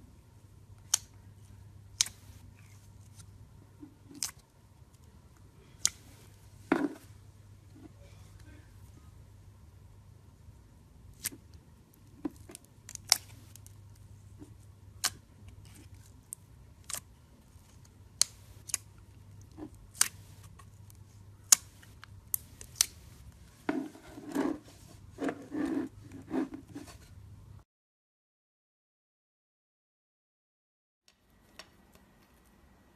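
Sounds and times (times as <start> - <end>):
slime squishing: 2.0 - 4.4, 11.1 - 26.8.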